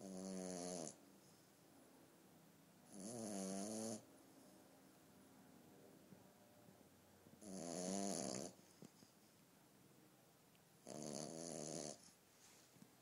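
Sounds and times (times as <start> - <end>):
puppy snoring: 0.0 - 1.4, 2.8 - 4.1, 7.4 - 9.0, 10.8 - 12.2.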